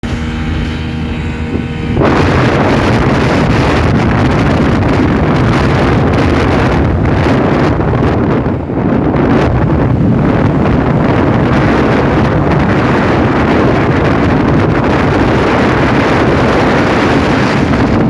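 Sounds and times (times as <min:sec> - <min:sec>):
rush of wind and water: 0:00.0 - 0:18.0
speedboat engine droning: 0:00.0 - 0:18.0
wind buffeting microphone: 0:00.0 - 0:18.0.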